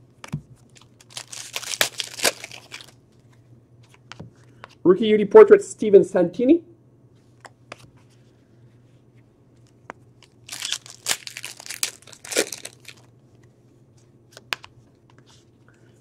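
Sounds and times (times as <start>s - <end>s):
foil wrapper tearing and crinkling: 0.7s - 3.0s, 10.2s - 13.1s.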